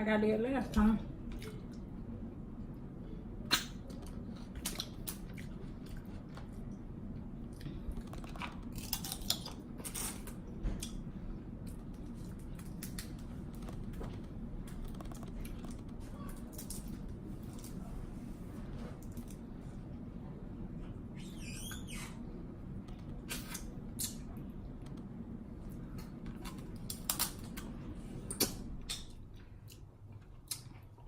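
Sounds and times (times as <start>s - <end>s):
wet chewing: 25.7s - 31.0s.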